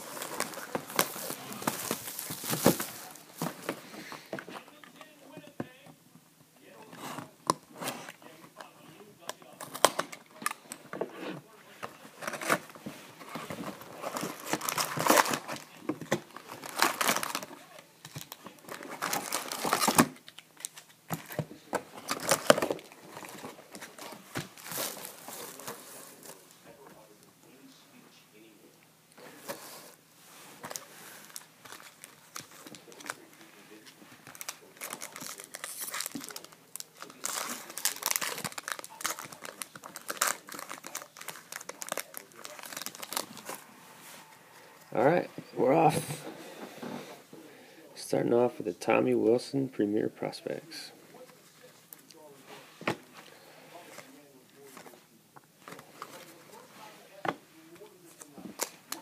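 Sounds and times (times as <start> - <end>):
plastic wrapping crinkling and tearing: 0.0 - 3.8, 12.2 - 21.4, 22.0 - 26.4, 30.6 - 43.7, 58.0 - 59.0.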